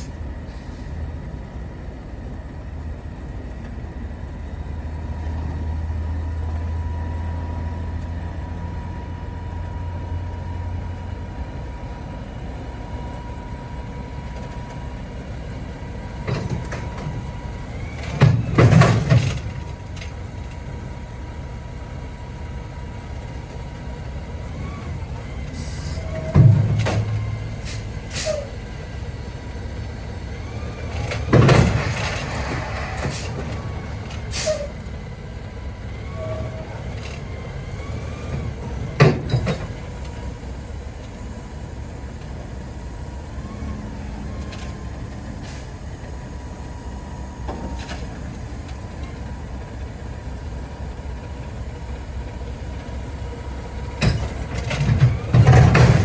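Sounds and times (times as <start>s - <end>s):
diesel engine idling: 0.0s - 56.0s
metal clanks and thumps: 18.0s - 20.2s, 26.1s - 27.4s, 30.9s - 34.2s, 38.4s - 40.0s, 54.0s - 56.0s.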